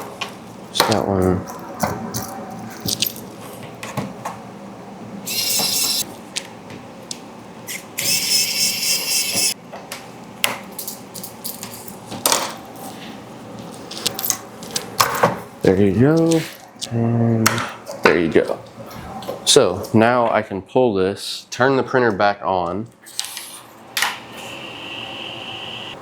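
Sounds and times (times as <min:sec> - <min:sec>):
electric screwdriver motor whining: 0:05.3 - 0:06.0, 0:07.7 - 0:09.6.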